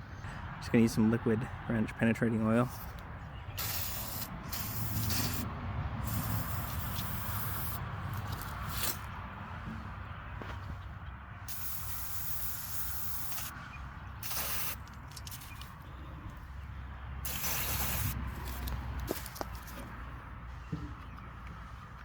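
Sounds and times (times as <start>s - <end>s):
aerosol spray hissing: 2.7s - 7.8s, 11.5s - 13.6s, 14.2s - 14.8s, 17.2s - 18.2s.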